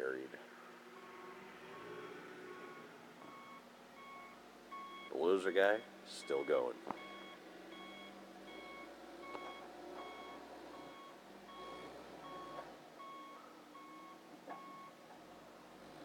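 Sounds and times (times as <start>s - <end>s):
reversing alarm beeping: 1.8s - 5.2s, 6.2s - 15.0s.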